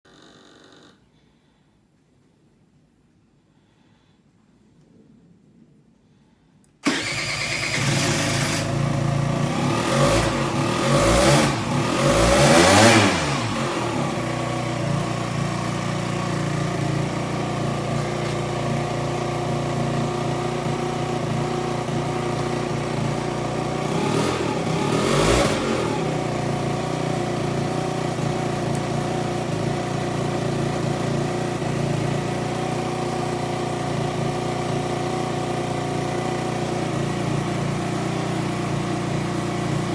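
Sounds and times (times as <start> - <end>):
scooter engine revving and idling: 6.8 - 39.9.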